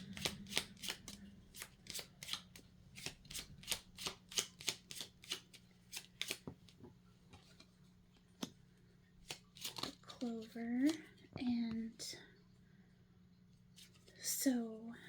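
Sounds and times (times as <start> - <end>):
cards being shuffled: 0.0 - 8.6, 9.2 - 11.1.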